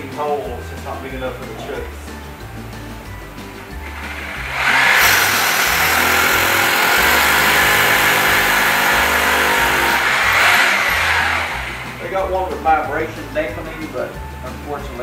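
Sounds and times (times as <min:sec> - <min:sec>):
rotary hammer drilling into cement: 0:03.9 - 0:12.0.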